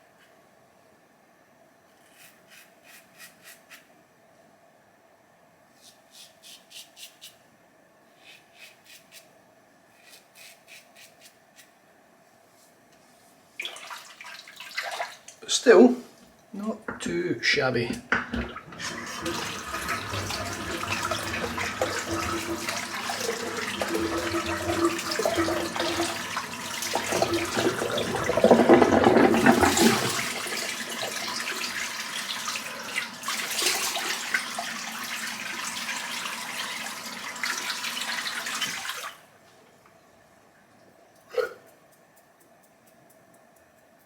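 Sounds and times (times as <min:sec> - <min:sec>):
tap running into a sink: 0:17.9 - 0:32.4
water splashing: 0:18.2 - 0:32.2.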